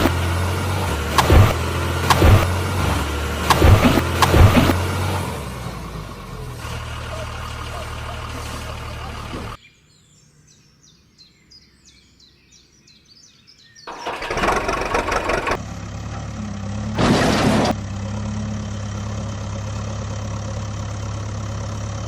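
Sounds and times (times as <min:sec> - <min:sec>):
engine drone: 0:00.0 - 0:09.6, 0:13.9 - 0:22.0
loud rough engine noise: 0:00.0 - 0:09.6, 0:13.9 - 0:22.0
birds chirping: 0:00.0 - 0:15.6
loud rushing burst: 0:00.9 - 0:05.2.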